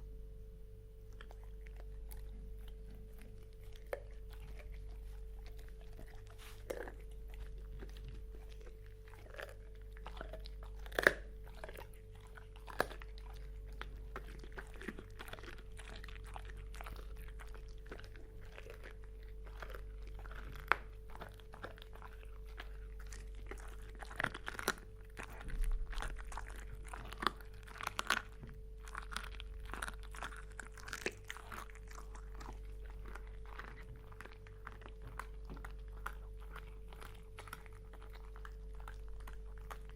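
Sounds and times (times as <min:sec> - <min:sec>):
faint steady hum: 0:00.0 - 0:39.9
dog chewing on bone: 0:00.9 - 0:39.9.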